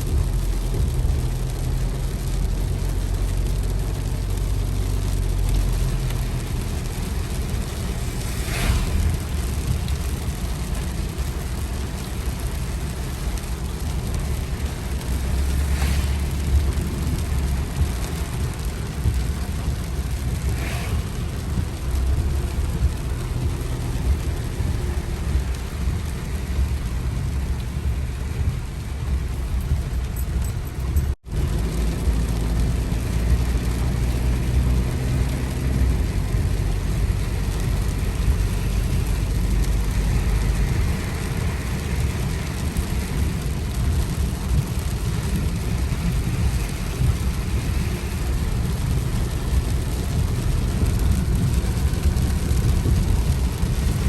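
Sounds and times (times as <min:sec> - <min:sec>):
wind and road noise rumble: 0:00.0 - 0:54.0.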